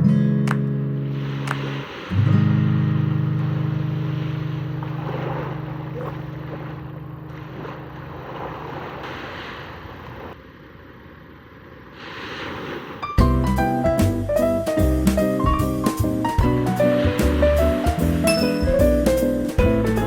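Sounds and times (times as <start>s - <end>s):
music: 0.0s - 5.0s, 13.2s - 20.0s
guitar music: 0.0s - 7.9s, 13.2s - 20.0s
surf washing onto beach: 1.1s - 10.6s, 11.8s - 13.2s, 16.2s - 19.2s.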